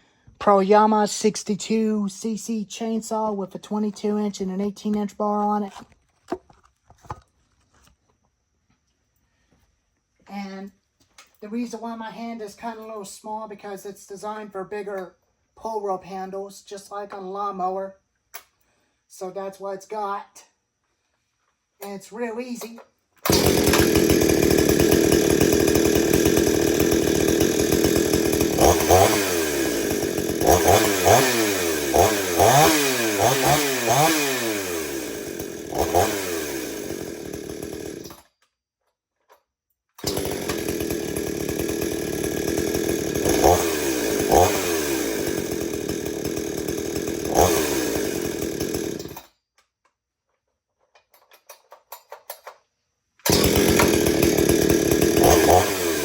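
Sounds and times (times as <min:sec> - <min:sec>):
chainsaw engine revving: 0:23.2 - 0:38.2, 0:40.0 - 0:49.3, 0:53.2 - 0:56.0.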